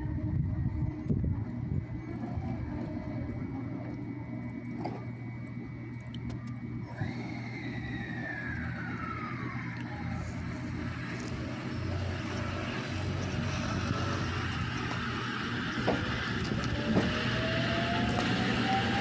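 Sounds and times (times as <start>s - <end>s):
electric train humming: 0.0s - 19.0s
whine sliding down in pitch: 6.3s - 19.0s.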